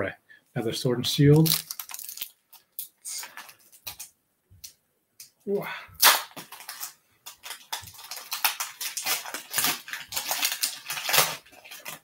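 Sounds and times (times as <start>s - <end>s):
cards and foil wrapper crinkling: 1.3s - 4.1s, 6.0s - 12.0s.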